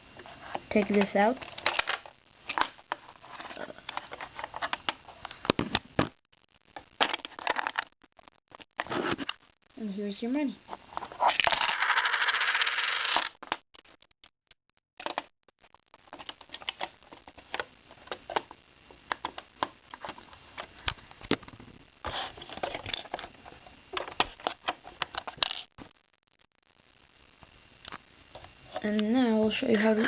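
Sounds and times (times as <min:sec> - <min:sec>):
plastic pieces and coins rattling: 0:11.2 - 0:13.6, 0:22.4 - 0:23.3.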